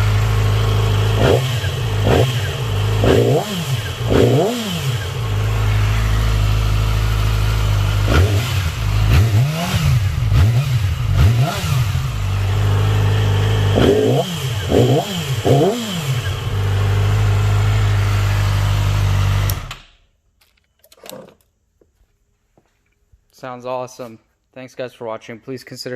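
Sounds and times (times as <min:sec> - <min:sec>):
motorcycle engine idling and revving: 0:00.0 - 0:19.8.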